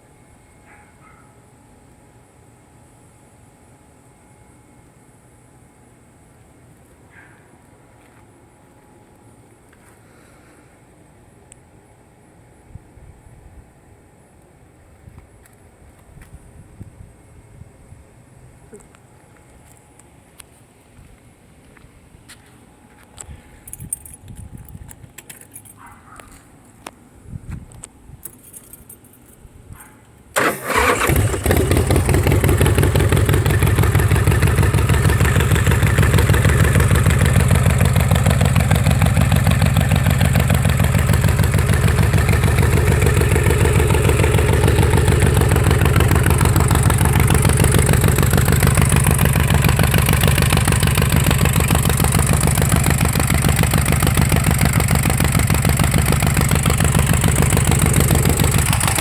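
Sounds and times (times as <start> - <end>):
motorcycle engine starting and idling: 30.3 - 59.0.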